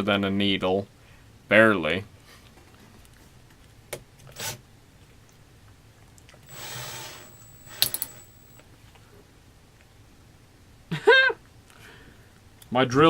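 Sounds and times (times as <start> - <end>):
drill chuck clicks: 6.5 - 8.6
short burst of noise: 6.5 - 8.6.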